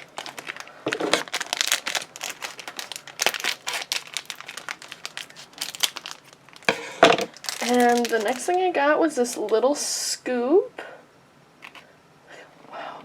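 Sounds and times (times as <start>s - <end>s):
plastic packaging crinkling: 0.0s - 8.7s.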